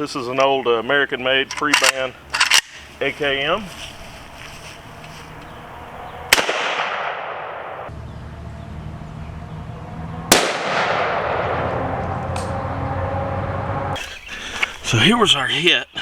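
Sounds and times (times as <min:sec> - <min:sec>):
rifle shots with echo: 0:06.3 - 0:07.9, 0:10.3 - 0:11.6.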